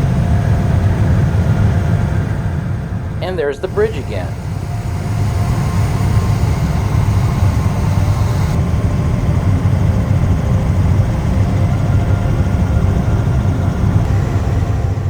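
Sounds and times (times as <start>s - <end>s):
helicopter engine and rotor: 0.0s - 15.0s.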